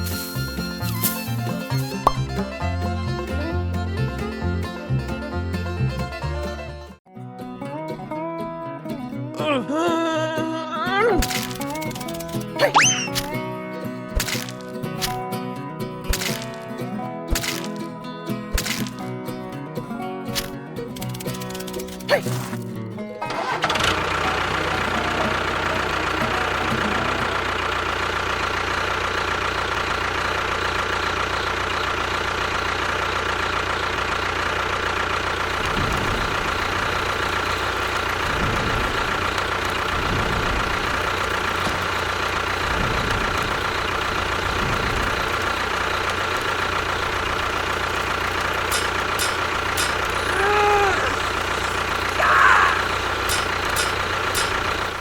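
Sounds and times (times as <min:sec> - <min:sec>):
short pitched sound: 0:12.6 - 0:13.4.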